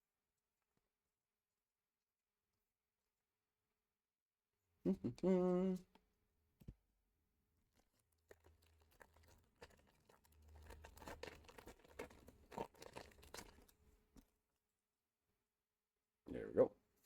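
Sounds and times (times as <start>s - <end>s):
person humming: 4.9s - 5.9s.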